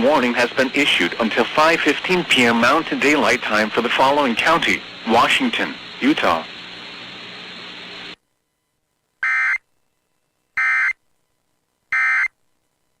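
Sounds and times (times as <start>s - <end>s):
steady hiss: 0.0s - 8.2s.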